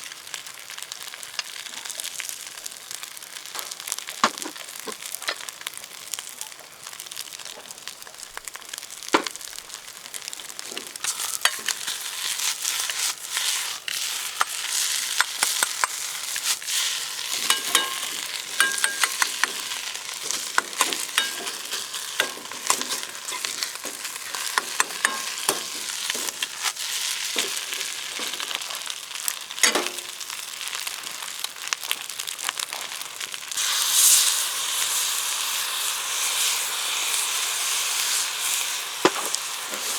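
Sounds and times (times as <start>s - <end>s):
rice sizzling in a wok: 0.0s - 39.9s
spatula scraping a wok: 10.6s - 30.9s, 37.1s - 39.9s.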